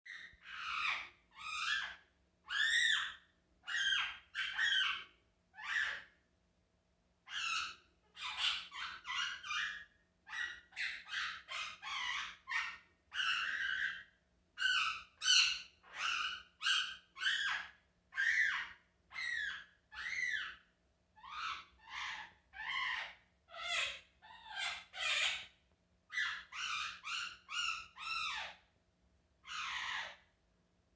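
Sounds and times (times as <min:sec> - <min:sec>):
parrot giving harsh calls: 0:29.5 - 0:30.2.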